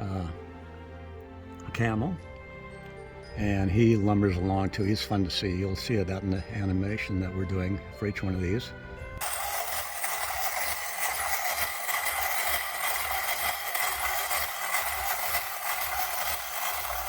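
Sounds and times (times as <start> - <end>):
clockwork toy whirring: 9.2 - 17.0.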